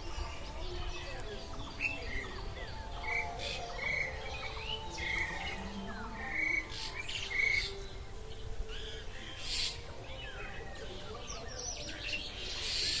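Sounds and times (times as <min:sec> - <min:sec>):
myna birds calling: 0:00.0 - 0:13.0.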